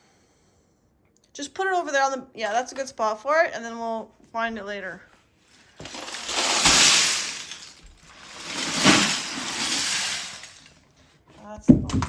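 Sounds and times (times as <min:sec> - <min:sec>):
plastic bricks clattering: 0:05.5 - 0:10.8.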